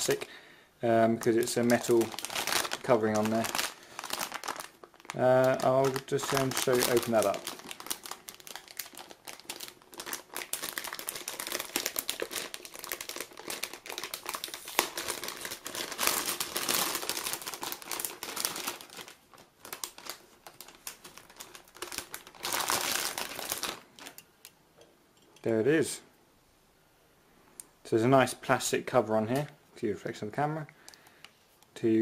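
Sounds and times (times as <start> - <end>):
plastic bag crinkling: 1.0 - 24.5.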